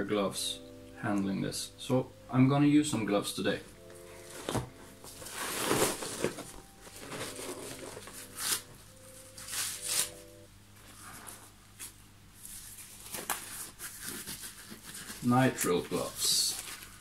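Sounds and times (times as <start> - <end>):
gloves rustling and snapping: 12.6 - 17.0.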